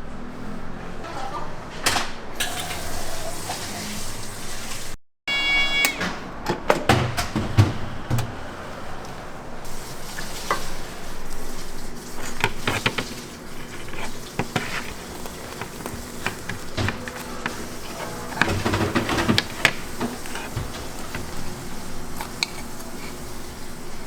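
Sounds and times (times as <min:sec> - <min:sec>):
food sizzling: 0:09.6 - 0:24.0
utensils clicking and knocking: 0:12.2 - 0:23.8.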